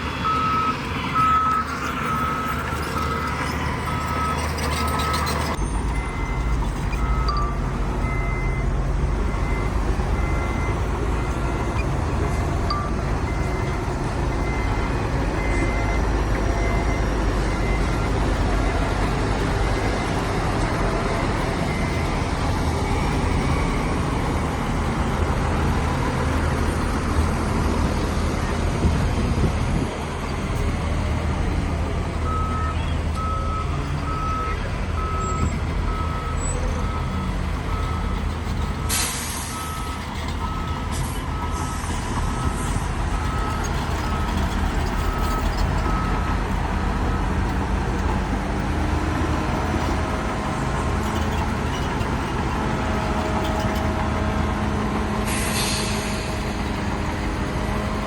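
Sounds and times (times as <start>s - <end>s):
diesel earthmoving machinery: 0.0s - 58.0s
reversing alarm beeping: 0.2s - 25.8s, 32.2s - 48.0s
short hiss: 55.3s - 56.4s.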